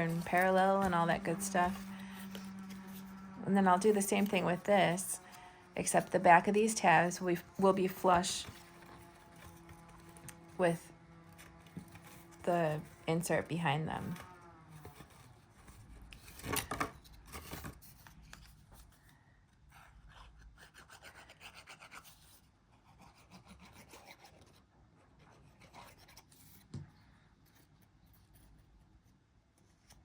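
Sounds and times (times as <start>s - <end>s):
paper rubbing and scraping: 0.0s - 19.1s, 19.7s - 26.7s.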